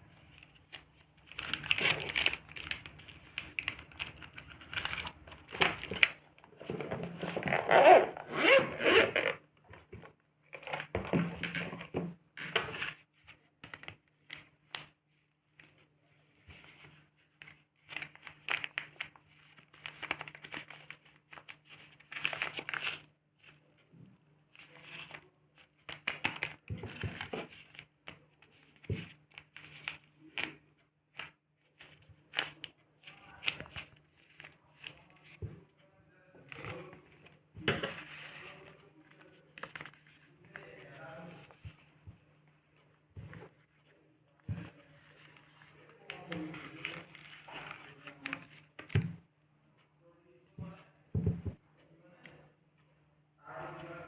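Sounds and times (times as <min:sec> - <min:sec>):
craft items rustling and crinkling: 0:00.1 - 0:10.0, 0:36.7 - 0:48.9.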